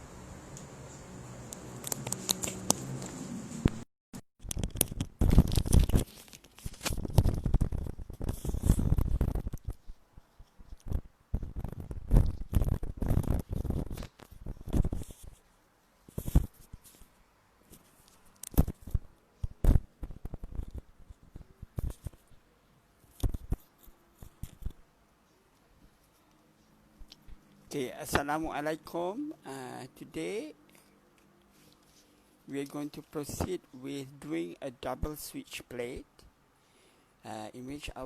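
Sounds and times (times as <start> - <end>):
handling rustling and scraping: 0.8 - 3.8, 4.4 - 22.4.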